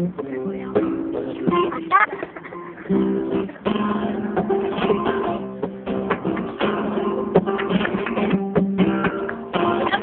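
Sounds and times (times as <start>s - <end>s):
flamenco guitar strumming chords: 0.0s - 10.0s.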